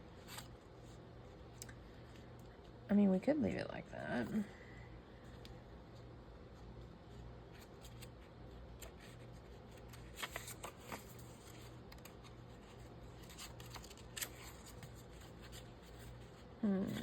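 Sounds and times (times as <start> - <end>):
faint steady hum: 0.0 - 17.0
paper being shuffled: 7.5 - 16.3.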